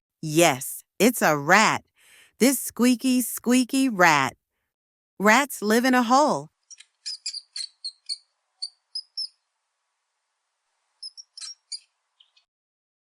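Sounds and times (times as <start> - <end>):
rat squeaking: 6.6 - 9.4, 11.0 - 12.5.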